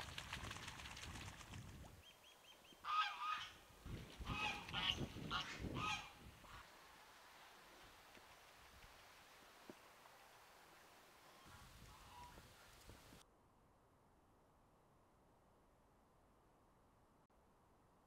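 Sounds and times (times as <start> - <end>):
farm waterfowl calling: 2.0 - 3.6, 4.2 - 6.7, 11.3 - 12.9.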